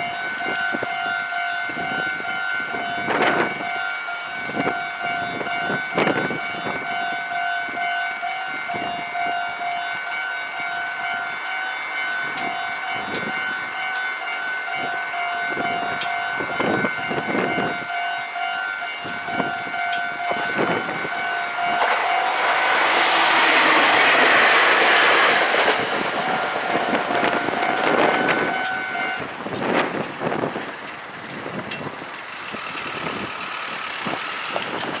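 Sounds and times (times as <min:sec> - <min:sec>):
level crossing alarm two-tone: 0:00.0 - 0:22.8
electric train passing: 0:00.0 - 0:35.0.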